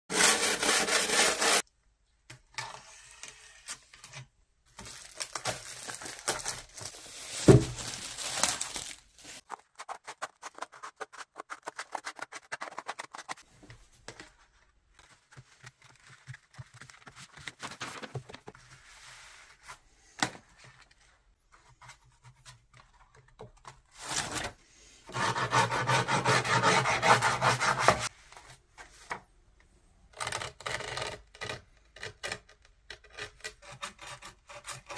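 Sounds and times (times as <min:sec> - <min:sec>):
handsaw scraping grip tape: 0:00.1 - 0:01.6, 0:09.5 - 0:13.4.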